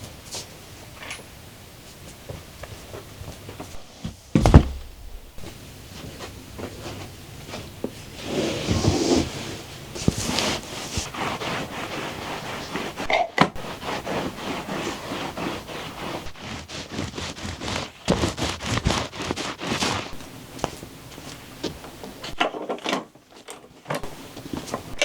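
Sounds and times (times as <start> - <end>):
household things rustling and scraping: 1.8 - 25.0
sharp knock: 4.4 - 5.6.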